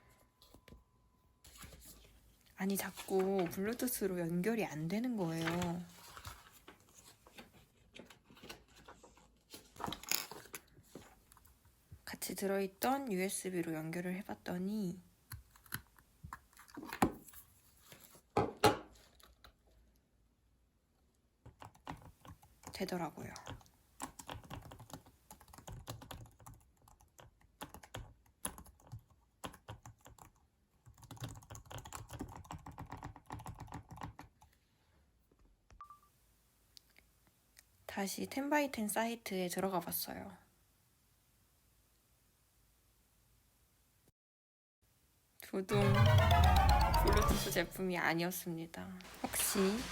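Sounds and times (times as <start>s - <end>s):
soft keyboard clicks and taps: 21.5s - 34.4s.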